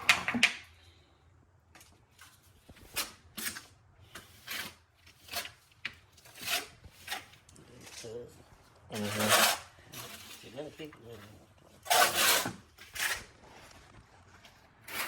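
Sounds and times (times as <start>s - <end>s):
hand tool scraping rough surface: 2.4s - 8.3s, 8.9s - 15.0s.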